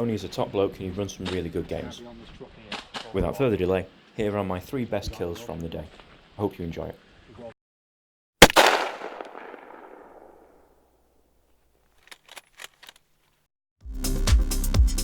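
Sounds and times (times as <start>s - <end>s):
loud gunshot with echo: 8.4s - 10.5s.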